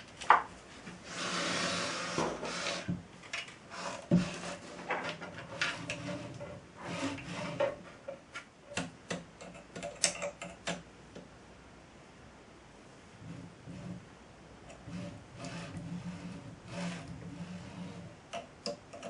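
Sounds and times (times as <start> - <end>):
hard objects clicking and knocking: 7.6 - 11.3.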